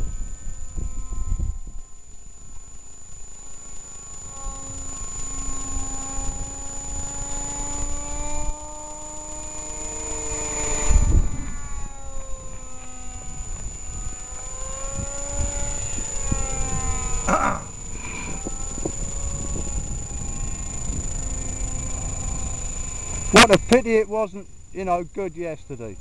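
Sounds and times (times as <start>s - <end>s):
wind buffeting microphone: 0.0s - 3.4s, 4.1s - 26.0s
model plane propeller whine: 0.0s - 26.0s.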